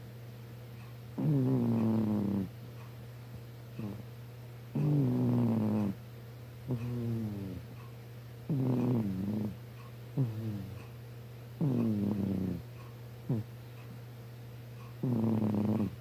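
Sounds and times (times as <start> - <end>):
cat snoring: 1.2 - 2.6, 3.8 - 4.0, 4.7 - 6.0, 6.7 - 7.7, 8.5 - 9.6, 10.2 - 10.9, 11.6 - 12.7, 13.3 - 13.5, 15.0 - 16.0.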